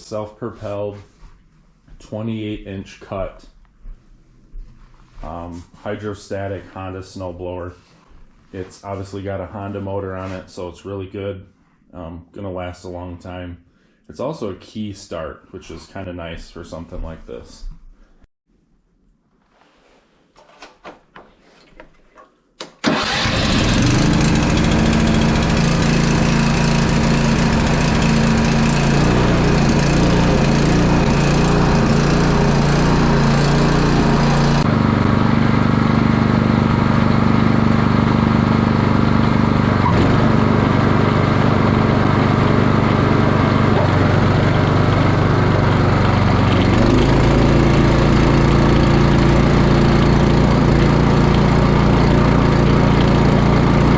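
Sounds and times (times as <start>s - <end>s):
snowblower engine running: 22.8s - 53.9s.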